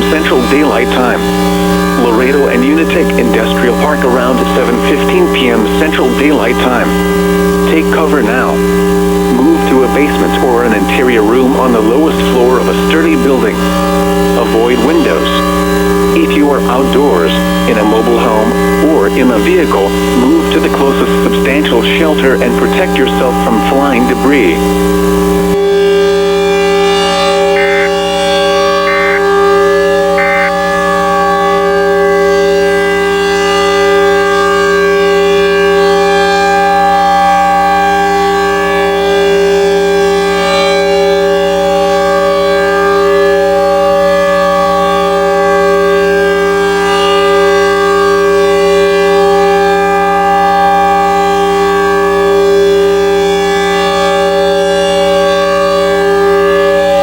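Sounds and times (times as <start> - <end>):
electronic data bursts: 0.0 - 15.5, 16.1 - 25.6, 26.6 - 30.6
warning siren steady tone: 0.0 - 57.0.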